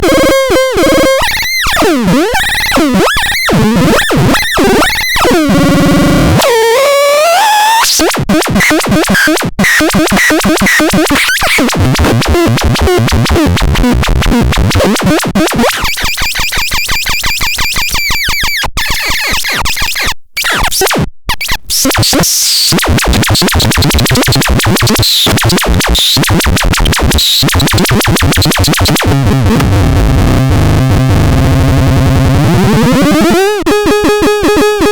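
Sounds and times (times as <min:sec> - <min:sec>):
noisy electronic drum synth tones: 0:22.8 - 0:34.9.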